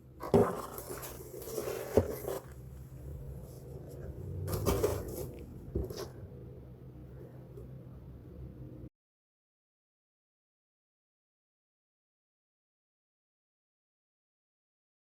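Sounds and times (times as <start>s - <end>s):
steady low hum: 0.0s - 8.9s.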